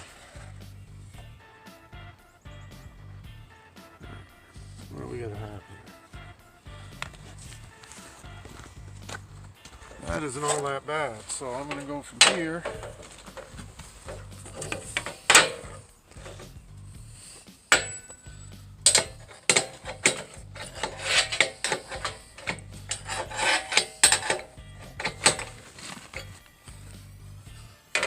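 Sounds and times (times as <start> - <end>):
hand tools clanking on steel: 9.0 - 28.0.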